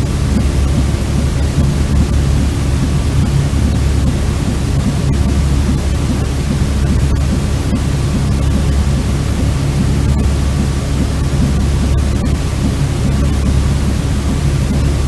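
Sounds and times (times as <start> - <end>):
deep rumbling white noise: 0.0 - 15.0.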